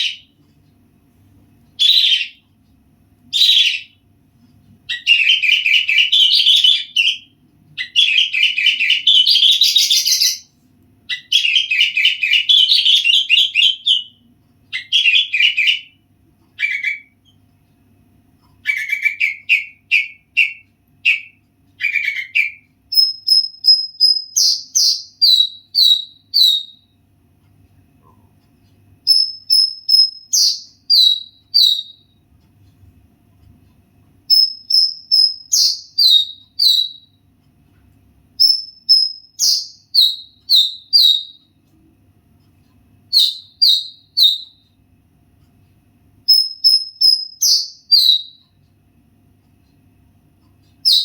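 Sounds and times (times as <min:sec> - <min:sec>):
songbird trilling: 0:01.8 - 0:02.4, 0:03.4 - 0:03.9, 0:04.9 - 0:10.5, 0:11.1 - 0:14.1, 0:14.8 - 0:16.0, 0:18.6 - 0:26.8, 0:29.1 - 0:32.0, 0:34.3 - 0:37.1, 0:38.4 - 0:41.4, 0:43.1 - 0:44.6, 0:46.3 - 0:48.4.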